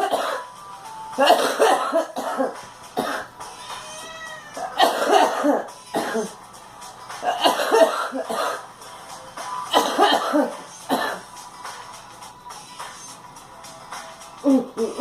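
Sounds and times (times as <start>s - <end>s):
girl coughing: 0.0s - 0.5s, 1.2s - 3.3s, 4.7s - 6.4s, 7.2s - 8.6s, 9.7s - 11.2s.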